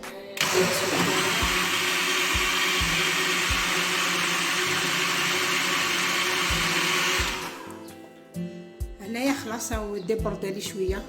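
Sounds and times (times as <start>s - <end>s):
electric blender running: 0.4s - 7.8s.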